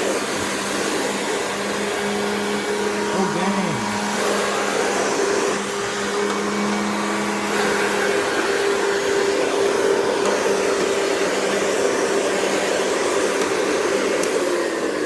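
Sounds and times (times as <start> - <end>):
vacuum cleaner motor running: 0.0 - 15.0.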